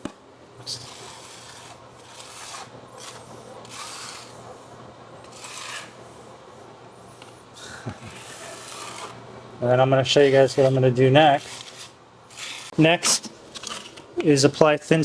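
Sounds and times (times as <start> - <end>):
hand scrubbing shower floor: 0.6 - 4.6, 5.2 - 6.3, 7.8 - 9.2, 9.8 - 13.2.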